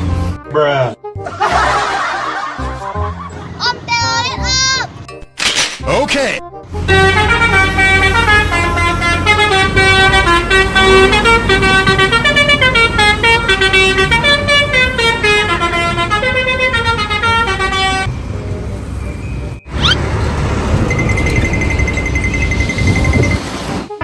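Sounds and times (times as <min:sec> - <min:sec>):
musical air horn playing a tune: 0:06.7 - 0:18.1
bus engine rumble: 0:06.7 - 0:24.0.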